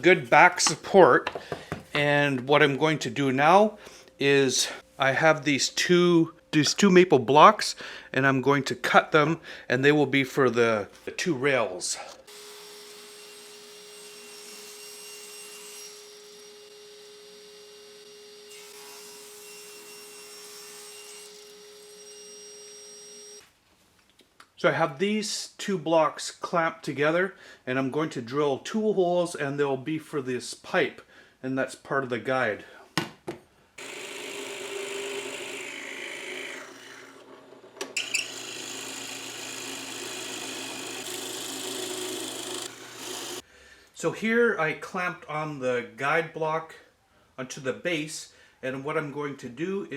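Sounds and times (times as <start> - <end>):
power saw cutting wood: 12.3 - 23.4, 33.8 - 43.4
power drill boring wood: 33.8 - 43.4.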